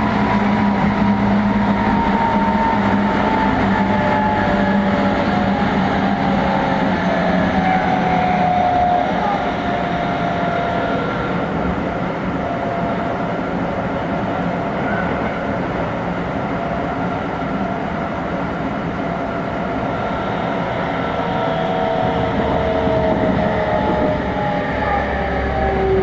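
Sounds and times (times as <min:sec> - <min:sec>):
electric train motor whine: 0:00.0 - 0:13.0, 0:18.9 - 0:26.0
wheel and rail noise: 0:00.0 - 0:13.7, 0:18.3 - 0:26.0.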